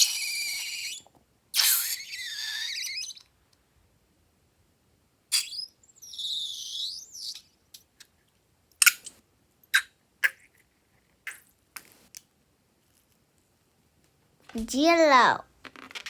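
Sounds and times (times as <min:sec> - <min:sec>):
rubber balloon squealing: 0:00.0 - 0:03.2, 0:05.3 - 0:07.4.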